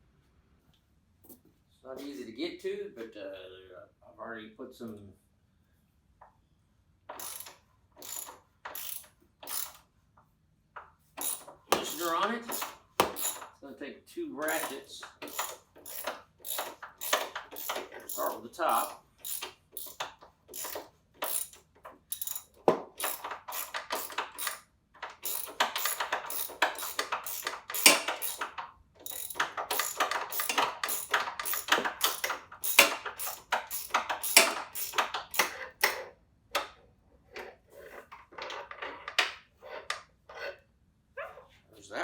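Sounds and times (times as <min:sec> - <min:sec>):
socket ratchet clicking: 0:07.1 - 0:09.8, 0:11.2 - 0:13.6, 0:14.4 - 0:36.0.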